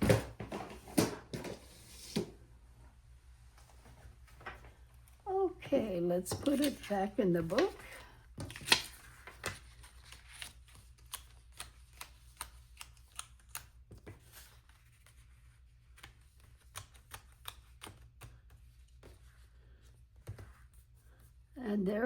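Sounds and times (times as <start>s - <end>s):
paper rustling: 6.4s - 19.4s.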